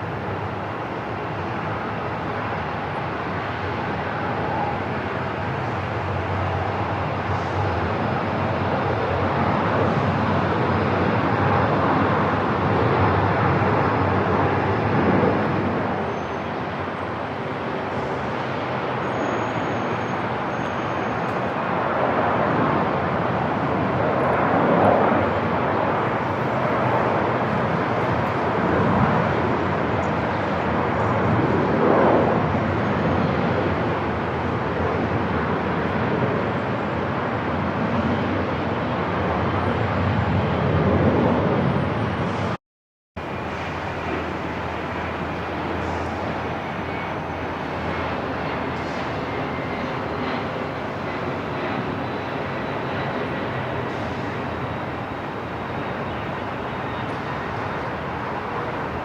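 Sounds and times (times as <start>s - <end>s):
airport ambience: 0.0s - 42.5s, 43.2s - 59.0s.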